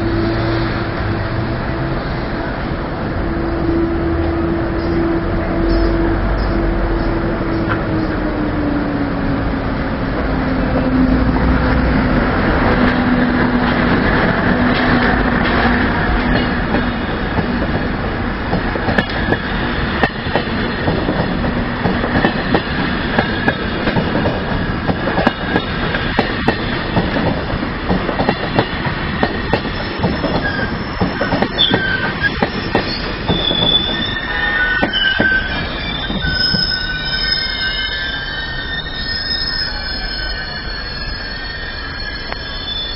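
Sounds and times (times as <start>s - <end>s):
train wheel squeals: 3.6s - 8.4s, 10.8s - 42.9s
train wheels clicking over rails: 10.0s - 36.8s.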